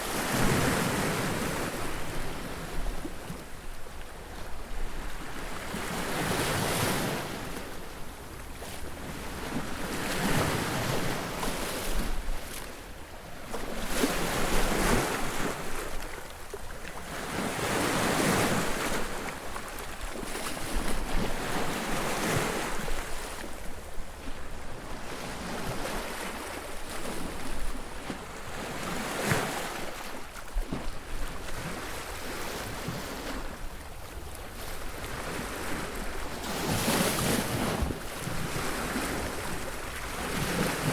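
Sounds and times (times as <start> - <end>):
waves crashing on a beach: 0.0 - 3.6, 16.9 - 40.9.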